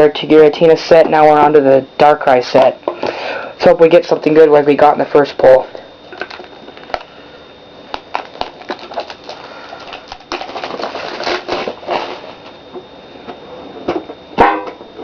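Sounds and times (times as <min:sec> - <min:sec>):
card packs rustling: 0:06.1 - 0:07.1, 0:08.0 - 0:12.6.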